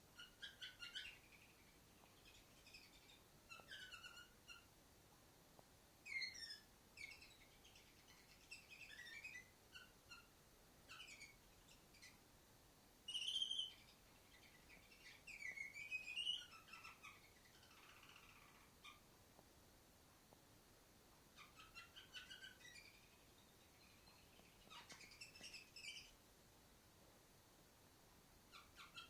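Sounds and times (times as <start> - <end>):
canary chirping and singing: 0.1 - 4.7, 6.0 - 10.3, 10.9 - 12.2, 13.1 - 19.0, 21.3 - 26.2, 28.5 - 29.0.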